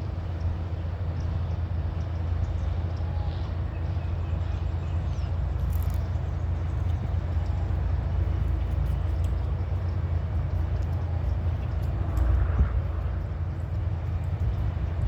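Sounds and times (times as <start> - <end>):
low rumble: 5.4 - 15.0.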